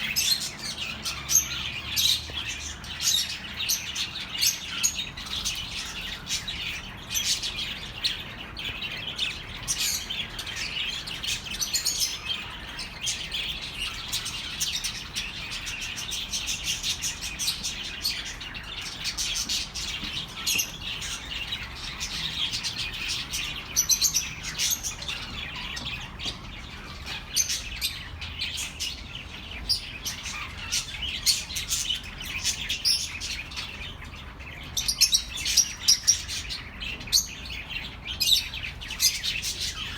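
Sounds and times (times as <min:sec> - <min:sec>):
budgerigars chattering: 0:00.0 - 0:39.9.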